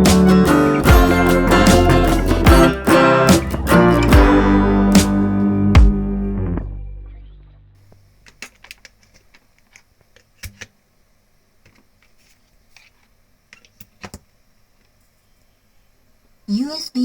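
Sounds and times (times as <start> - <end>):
guitar music: 0.0 - 7.8.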